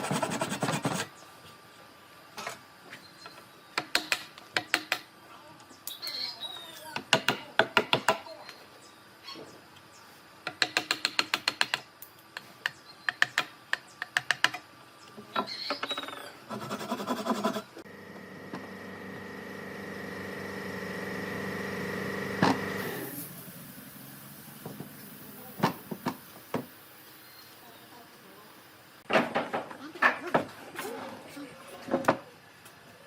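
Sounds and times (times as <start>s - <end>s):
small power tool humming: 17.9s - 23.4s.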